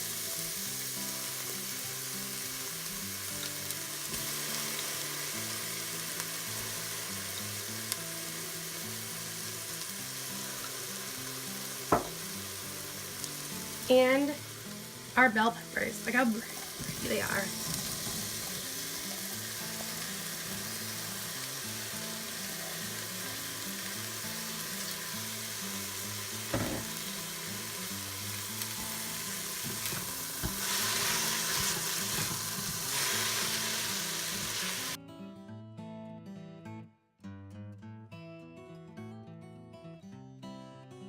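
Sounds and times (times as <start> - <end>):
vegetables sizzling in oil: 0.0 - 35.0
soft background music: 0.1 - 35.0
single knock: 11.9 - 12.2.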